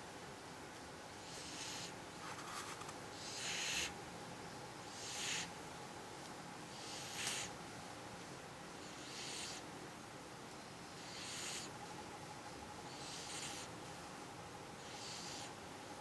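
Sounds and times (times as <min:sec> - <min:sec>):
cat snoring: 0:01.2 - 0:01.9, 0:03.2 - 0:03.9, 0:08.8 - 0:09.6, 0:11.0 - 0:11.7, 0:12.9 - 0:13.7, 0:14.8 - 0:15.6.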